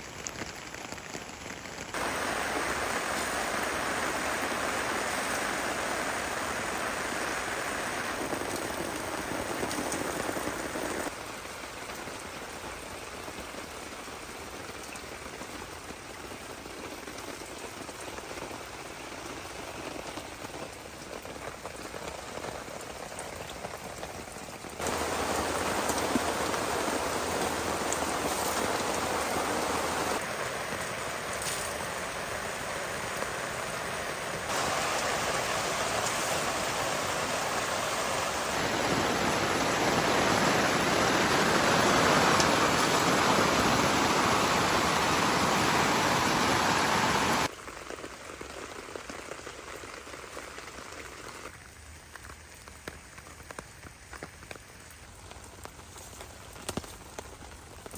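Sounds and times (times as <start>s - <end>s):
heavy rain falling: 0.0s - 57.9s.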